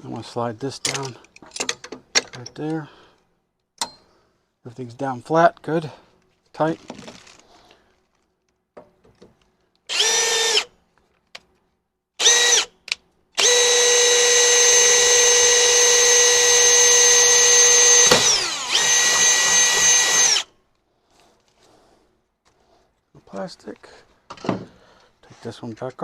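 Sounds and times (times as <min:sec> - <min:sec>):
cordless drill motor whining: 0:09.9 - 0:10.7, 0:12.2 - 0:12.8, 0:13.4 - 0:20.5.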